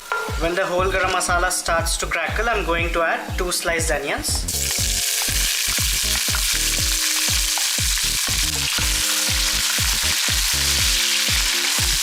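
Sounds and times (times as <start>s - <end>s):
onions sizzling in hot oil: 0.0s - 1.7s, 4.4s - 12.0s.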